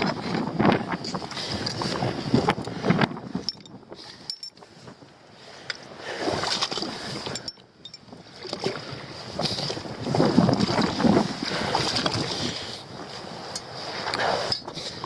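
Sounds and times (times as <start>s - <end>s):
wind gusting over microphone: 0.0s - 15.0s
faint clinks: 3.4s - 4.6s, 7.3s - 8.1s.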